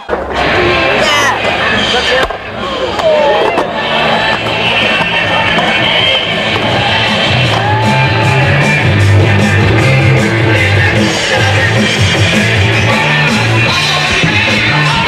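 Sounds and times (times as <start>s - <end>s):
loud rock music: 3.7s - 15.0s.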